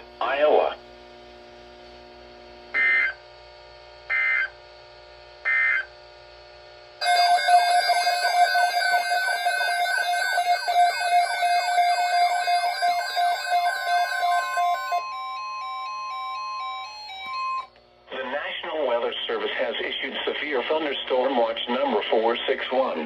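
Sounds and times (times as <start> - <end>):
warbling electronic alert tone: 7.0 - 17.7.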